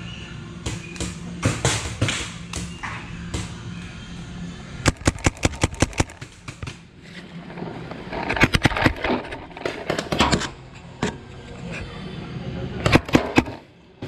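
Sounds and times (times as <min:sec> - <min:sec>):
paintball markers firing: 0:04.8 - 0:06.8.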